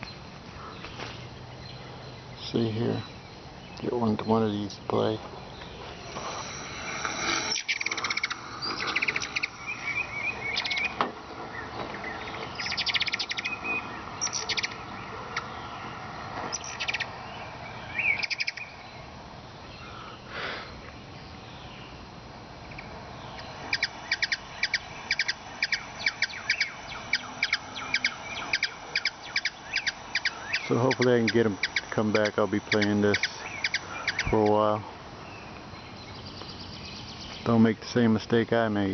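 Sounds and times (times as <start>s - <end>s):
recorded hummingbird calls: 0.0s - 38.9s
sharp chip notes: 5.9s - 11.0s, 23.4s - 34.7s.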